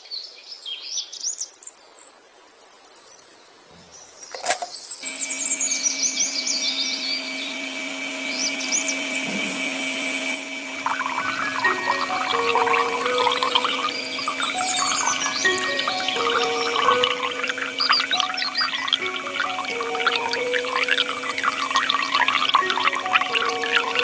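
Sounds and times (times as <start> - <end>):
birds chirping: 3.1 - 24.0
sharp click: 4.2 - 4.8
steady hum with held tones: 5.0 - 24.0.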